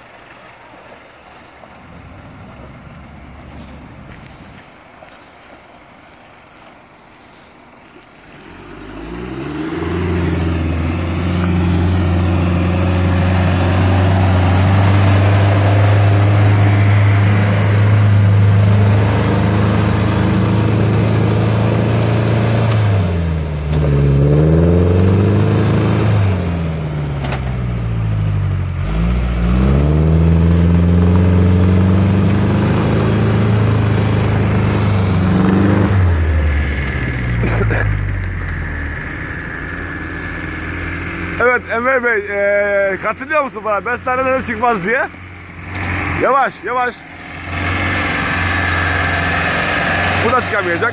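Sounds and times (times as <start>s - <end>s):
engine revving hard: 8.4s - 26.8s, 28.8s - 41.8s, 45.6s - 50.9s.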